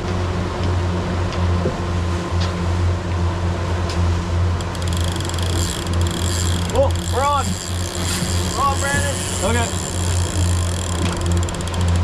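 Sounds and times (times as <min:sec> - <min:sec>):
boat engine droning: 0:00.0 - 0:12.0
fishing reel ratchet clicking: 0:04.6 - 0:12.0.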